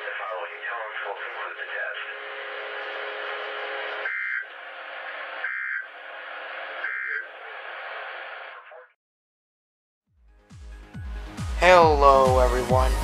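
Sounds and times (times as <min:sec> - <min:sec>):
radio hiss: 0:00.0 - 0:08.9.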